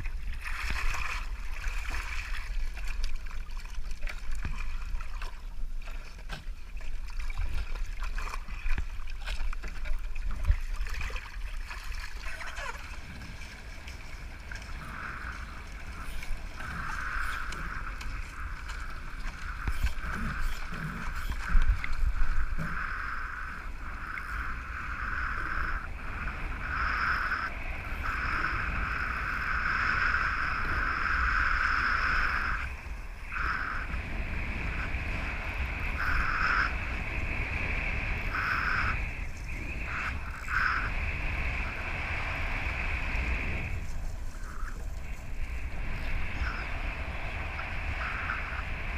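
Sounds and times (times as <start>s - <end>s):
rushing water: 0.0s - 48.9s
wind buffeting microphone: 0.0s - 48.9s
high whine: 12.3s - 48.9s.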